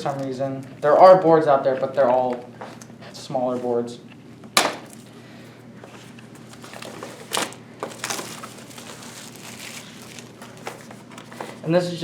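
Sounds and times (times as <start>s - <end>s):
packaging clicks and crinkles: 6.4s - 11.6s.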